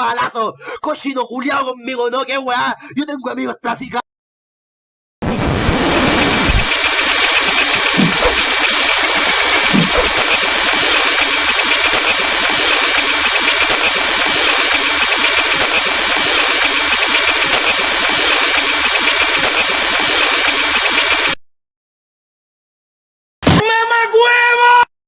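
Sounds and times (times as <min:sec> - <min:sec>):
motor running loudly: 0:05.3 - 0:21.4.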